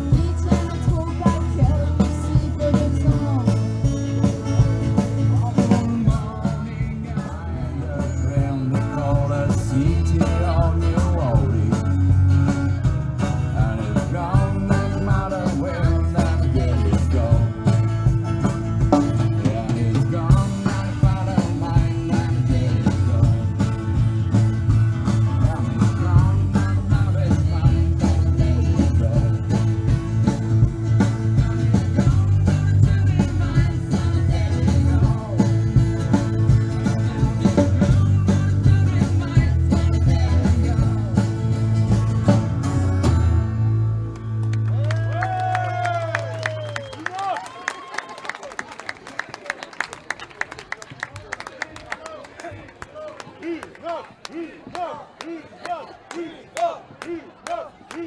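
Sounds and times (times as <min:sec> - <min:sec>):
drum beat: 0:00.0 - 0:42.6
live country band playing: 0:00.0 - 0:46.9
guitar: 0:00.0 - 0:47.0.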